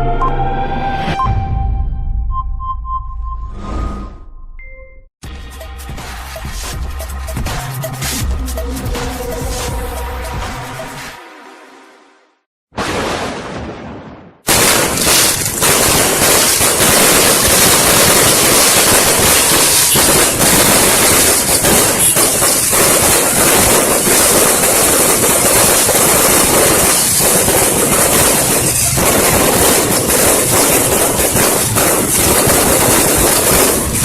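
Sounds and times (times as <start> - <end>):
fireworks bangs and crackles: 12.8 - 34.0.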